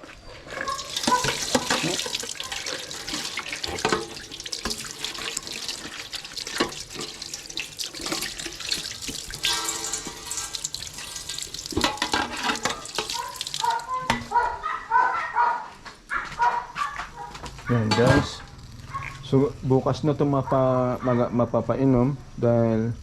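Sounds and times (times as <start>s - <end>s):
water running and splashing: 0.4s - 14.5s.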